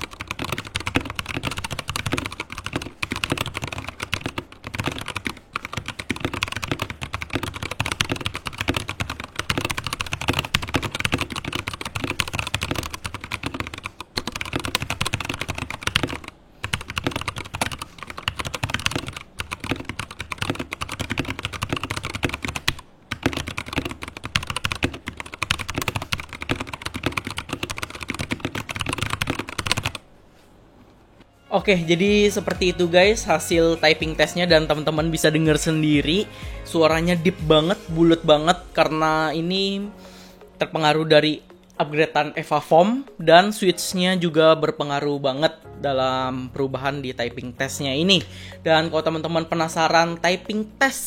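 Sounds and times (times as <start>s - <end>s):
mechanical keyboard typing: 0.0s - 30.0s.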